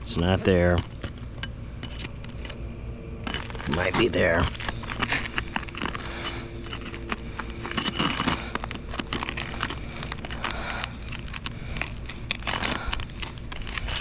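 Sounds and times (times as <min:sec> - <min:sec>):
roof shingles being pried apart: 0:03.2 - 0:14.0.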